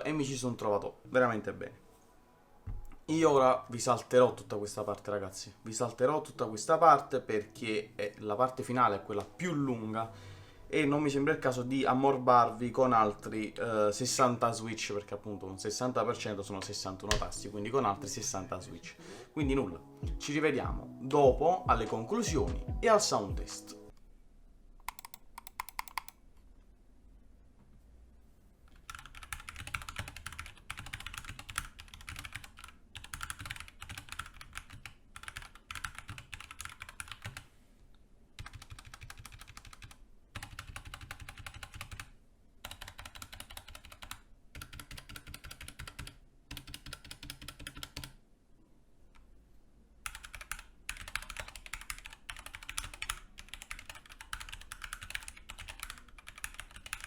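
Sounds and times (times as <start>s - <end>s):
fast typing on mechanical keyboard: 24.9s - 26.2s, 28.7s - 37.5s, 38.4s - 48.2s, 50.1s - 57.0s.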